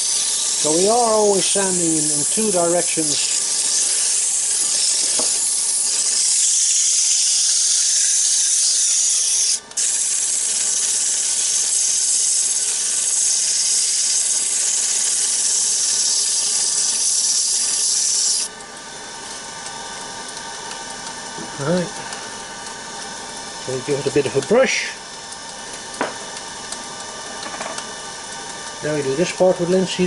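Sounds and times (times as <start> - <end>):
sandpaper hissing on spinning wood: 0.0 - 18.5
lathe motor humming: 0.0 - 30.0.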